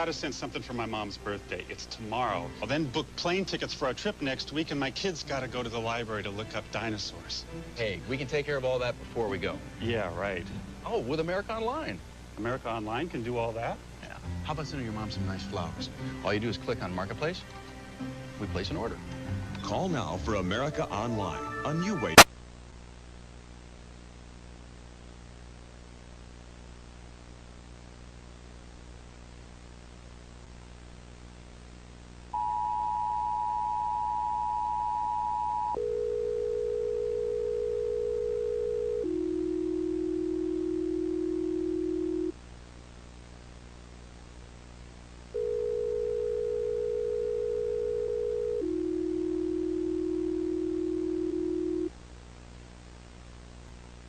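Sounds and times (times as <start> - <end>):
constant even hiss: 0.0 - 32.4, 40.9 - 47.0, 51.2 - 54.0
electrical mains hum: 0.0 - 54.0
steady electronic test tone: 32.4 - 35.8
higher steady tone: 32.4 - 35.9.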